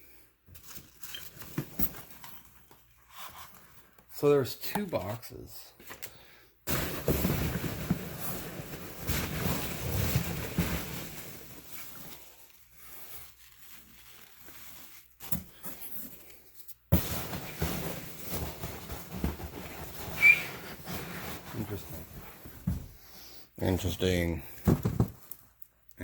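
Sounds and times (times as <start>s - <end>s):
cardboard boxes rustling: 0.5s - 3.9s, 6.7s - 23.0s, 24.6s - 25.4s
brief high squeak: 20.2s - 20.6s.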